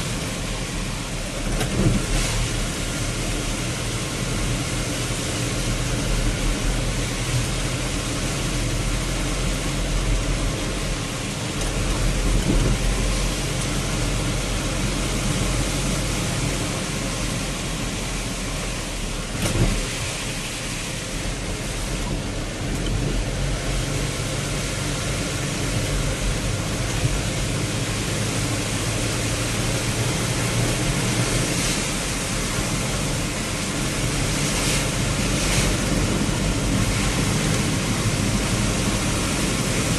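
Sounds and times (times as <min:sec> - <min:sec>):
heavy rain hissing: 0:00.0 - 0:39.9
low engine hum: 0:00.0 - 0:39.9
road noise: 0:00.0 - 0:39.9
thump: 0:19.3 - 0:19.9.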